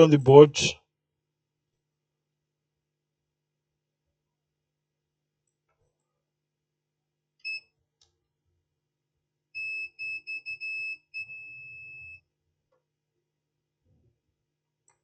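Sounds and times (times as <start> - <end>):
multimeter continuity beeps: 9.6 - 12.2.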